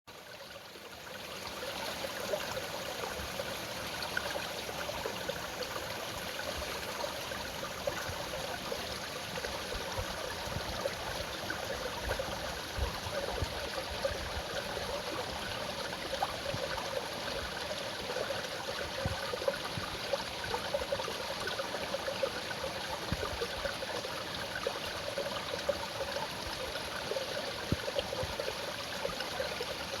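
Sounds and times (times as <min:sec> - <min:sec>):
stream flowing over rocks: 0:00.1 - 0:30.0.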